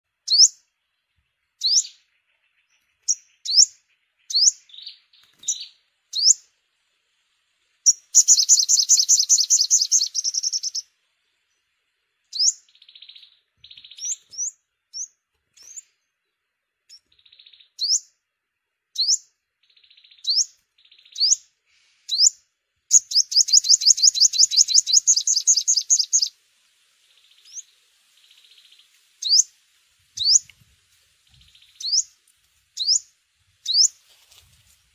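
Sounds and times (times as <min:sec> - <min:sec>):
bird high chirps: 0:00.2 - 0:06.5, 0:07.8 - 0:10.9, 0:12.2 - 0:16.2, 0:16.8 - 0:18.2, 0:18.9 - 0:26.4, 0:27.1 - 0:34.0
bird rapid high trill: 0:07.9 - 0:10.8, 0:22.9 - 0:26.3.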